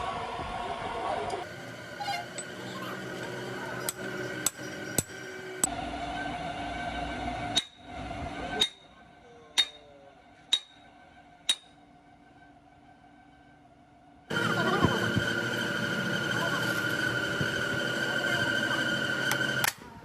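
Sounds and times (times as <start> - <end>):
hammer striking metal: 7.5 - 7.9, 8.6 - 11.8.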